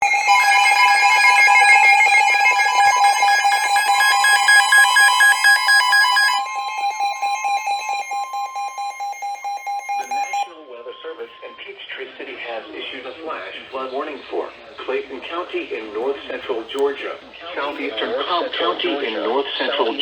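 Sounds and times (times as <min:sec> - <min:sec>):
two-tone alert alarm: 0:00.0 - 0:11.8.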